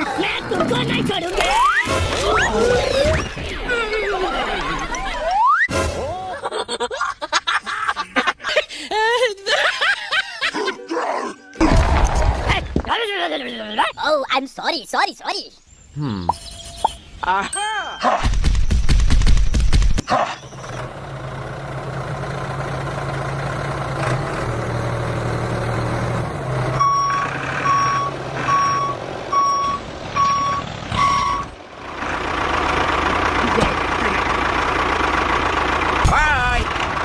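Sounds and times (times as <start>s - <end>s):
truck engine running: 18.6s - 37.0s
reversing beeps: 26.8s - 31.6s.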